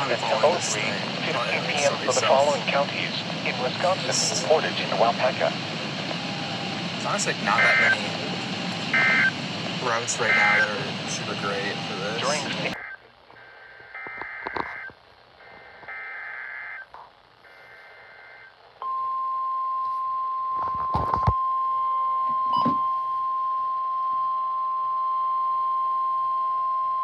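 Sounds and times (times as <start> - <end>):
steady warning alarm tone: 0.0 - 16.9
warbling digital header tones: 7.0 - 13.0.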